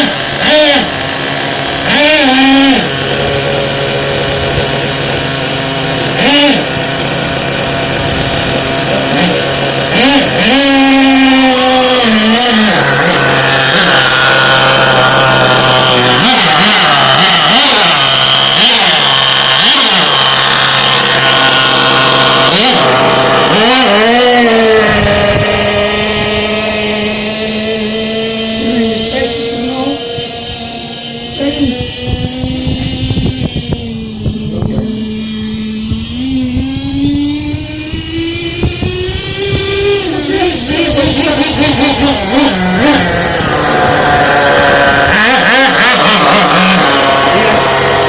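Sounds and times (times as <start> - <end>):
small nitro engine revving: 0.0 - 48.0.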